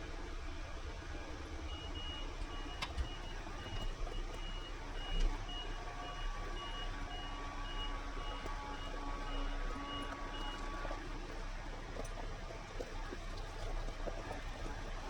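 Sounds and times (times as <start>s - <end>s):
low steady rumble: 0.0s - 15.0s
reversing alarm beeping: 1.7s - 10.8s.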